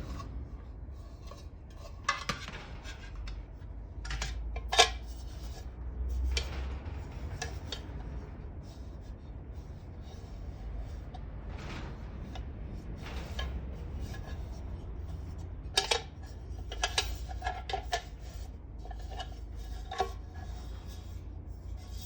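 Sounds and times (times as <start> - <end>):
low rumble: 5.5 - 19.6.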